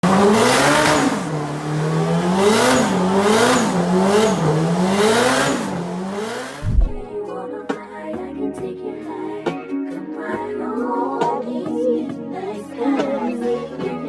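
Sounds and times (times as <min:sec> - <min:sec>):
turbocharged car engine revving: 0:00.0 - 0:07.0
low thump: 0:06.6 - 0:07.1.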